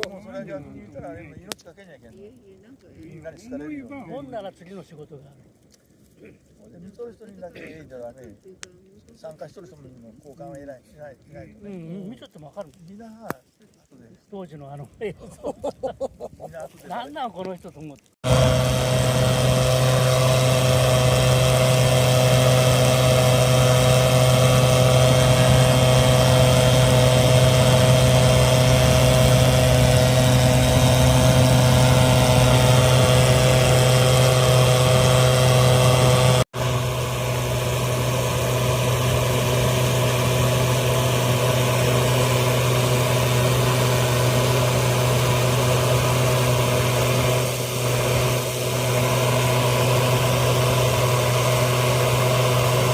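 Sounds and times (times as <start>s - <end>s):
engine idling: 18.2s - 52.9s.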